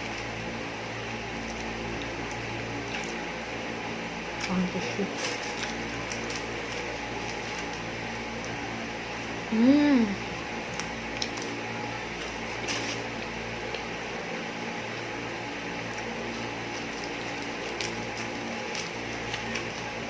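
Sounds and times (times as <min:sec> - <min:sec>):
steady background hum: 0:00.0 - 0:20.0
woman humming: 0:09.5 - 0:10.3.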